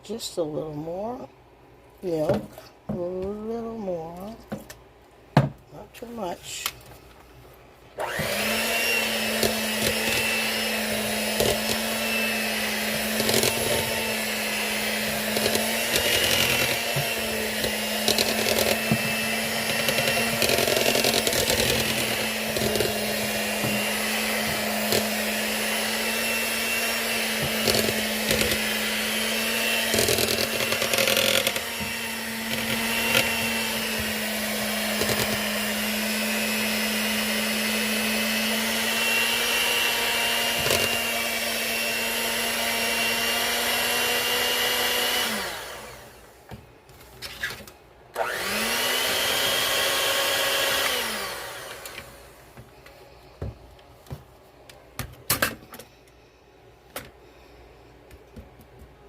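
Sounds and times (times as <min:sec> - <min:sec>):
electric mixer motor humming: 0:08.0 - 0:46.4, 0:48.2 - 0:52.7.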